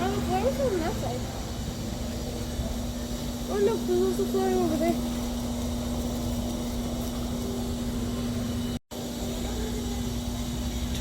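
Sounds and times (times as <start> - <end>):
shop background hum: 0.0 - 11.0.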